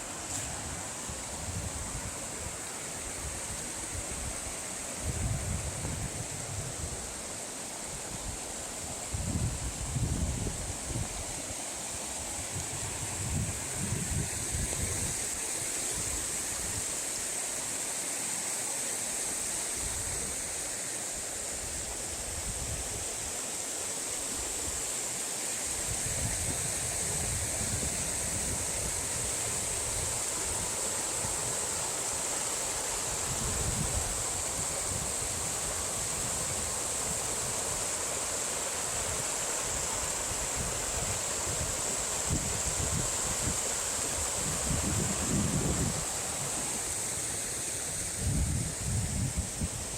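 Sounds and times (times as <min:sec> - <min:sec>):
stream flowing: 0:00.0 - 0:49.9
wind buffeting microphone: 0:44.4 - 0:46.5.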